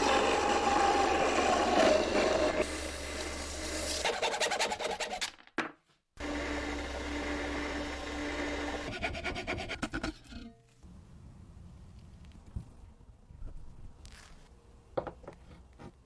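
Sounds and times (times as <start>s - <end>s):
electric power tool humming: 6.2s - 8.9s.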